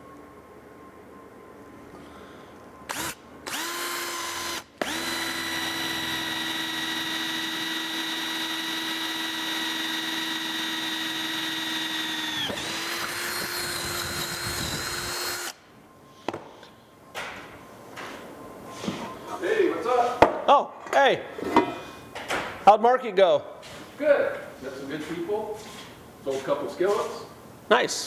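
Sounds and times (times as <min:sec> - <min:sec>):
electric drill boring through metal: 0:02.9 - 0:15.6.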